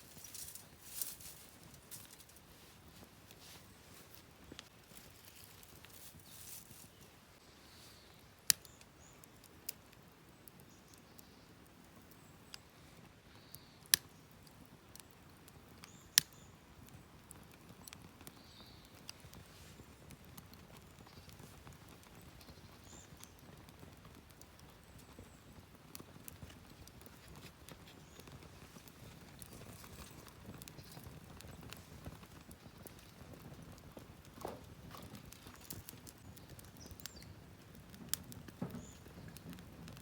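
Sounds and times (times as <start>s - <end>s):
firewood crackling: 0.0s - 40.0s
sharp fire pops: 8.4s - 9.9s, 17.2s - 40.0s.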